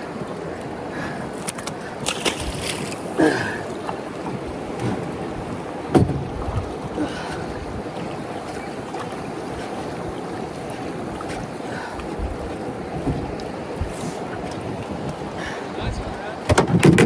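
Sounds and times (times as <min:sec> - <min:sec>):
river water moving: 0:00.0 - 0:17.0
wind: 0:00.0 - 0:17.0
knocks on boat: 0:03.9 - 0:05.2, 0:05.8 - 0:06.8, 0:12.1 - 0:14.6, 0:15.9 - 0:17.0.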